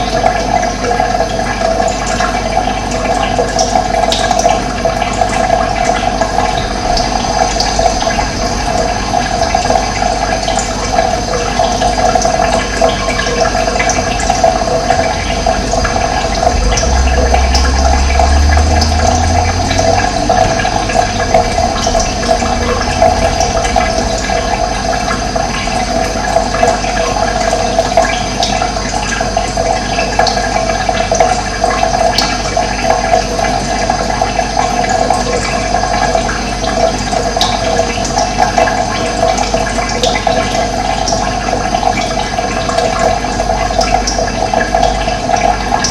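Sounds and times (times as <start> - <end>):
running water rushing: 0.0 - 45.9
low rumble: 5.6 - 11.2, 13.2 - 28.0.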